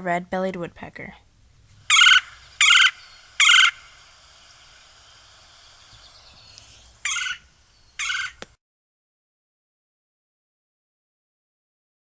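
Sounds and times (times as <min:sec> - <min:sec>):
steady background hiss: 0:00.0 - 0:08.6
woodpecker churr calls: 0:01.8 - 0:04.1, 0:05.8 - 0:08.5.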